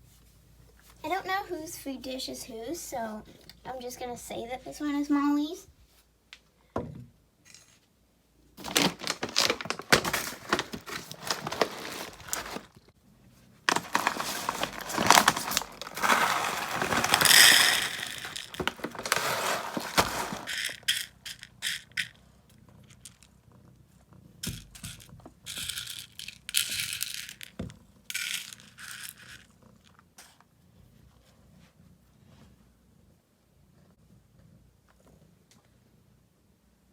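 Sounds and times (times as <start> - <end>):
cat food rattling in dishes: 8.6 - 12.8, 13.7 - 22.1, 24.4 - 29.6
scraping: 8.6 - 12.8, 13.7 - 22.1.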